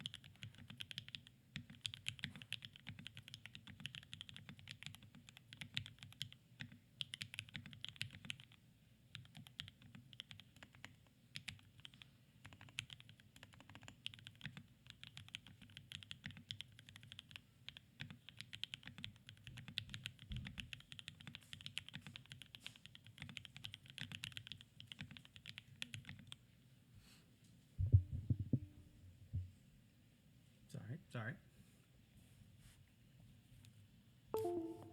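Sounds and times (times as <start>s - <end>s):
fast mechanical keyboard typing: 0.0s - 26.4s.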